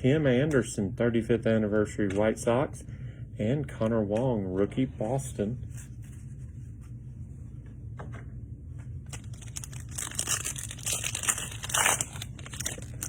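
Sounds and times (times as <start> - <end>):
foil wrapper crinkling: 9.1 - 13.0.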